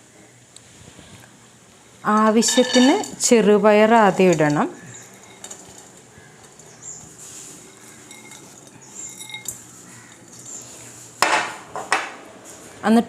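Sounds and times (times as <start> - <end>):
utensil clinking on metal: 2.0 - 7.0, 7.6 - 10.7.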